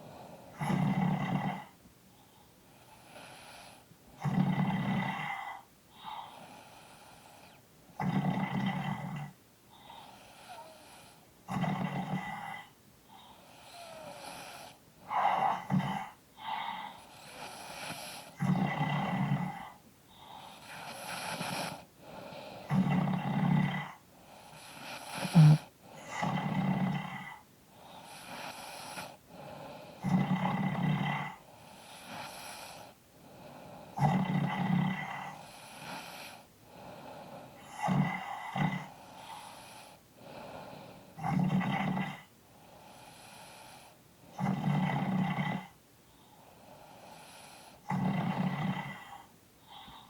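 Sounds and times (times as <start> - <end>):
two people snoring: 0.0 - 1.8, 2.7 - 50.0.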